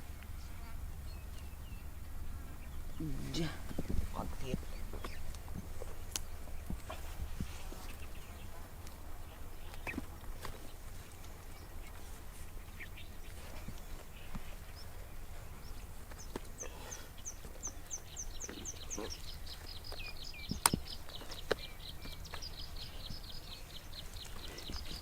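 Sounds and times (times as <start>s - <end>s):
small bird chirping and trilling: 0.6s - 8.5s.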